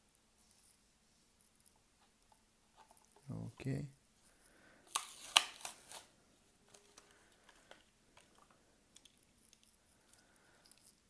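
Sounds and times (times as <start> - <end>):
plastic packaging crackling: 4.8 - 9.2.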